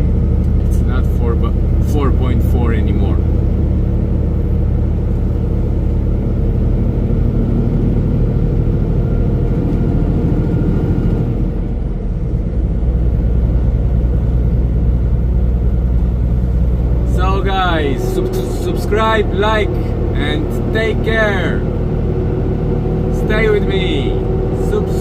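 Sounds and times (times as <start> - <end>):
truck engine low drone: 0.0 - 25.0.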